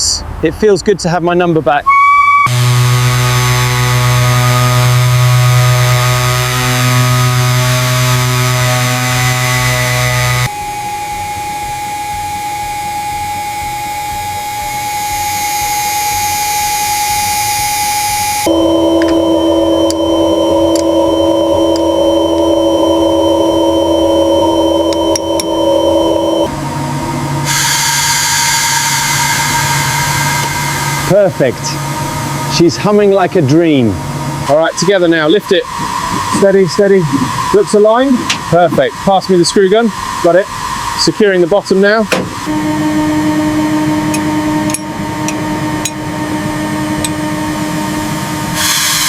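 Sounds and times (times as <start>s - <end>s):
power tool motor running: 2.5s - 10.5s, 14.4s - 31.2s
loud hiss: 26.1s - 33.3s.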